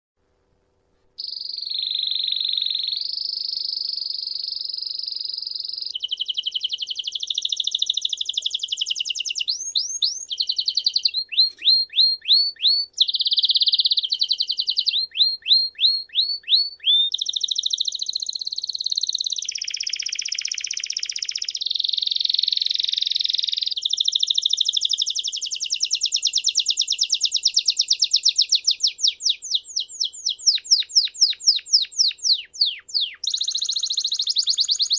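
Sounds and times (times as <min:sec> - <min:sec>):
songbird singing trills: 0:01.2 - 0:34.9.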